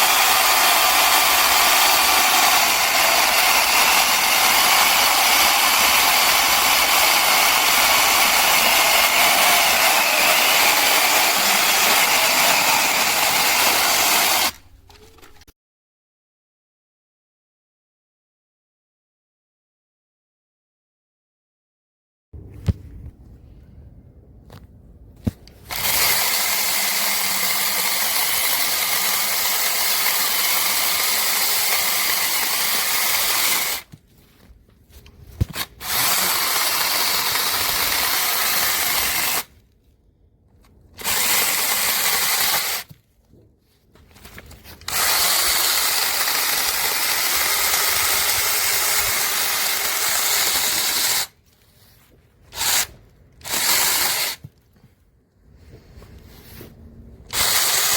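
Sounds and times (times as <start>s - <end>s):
battery chainsaw running: 0.0s - 14.6s, 25.7s - 33.9s, 35.5s - 39.5s, 41.0s - 42.9s, 44.9s - 51.4s, 52.6s - 54.4s, 57.3s - 57.9s.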